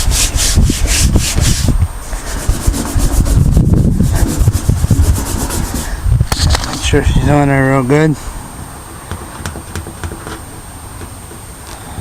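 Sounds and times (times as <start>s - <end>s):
hand rubbing vinyl decal: 0.0s - 6.8s.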